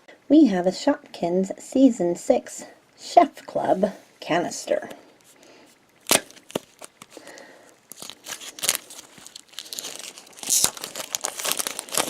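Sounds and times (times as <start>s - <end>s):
plastic wrapping crinkling: 6.0s - 12.0s.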